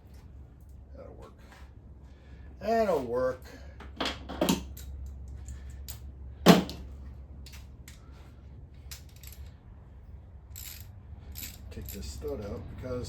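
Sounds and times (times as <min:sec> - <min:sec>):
steady low hum: 0:00.0 - 0:13.0
metal tools clicking: 0:08.8 - 0:09.6, 0:10.5 - 0:12.5.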